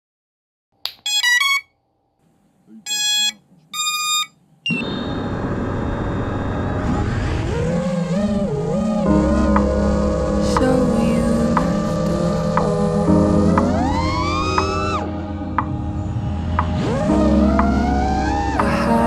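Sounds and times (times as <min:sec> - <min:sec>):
motor startup beeps: 0:02.9 - 0:07.2.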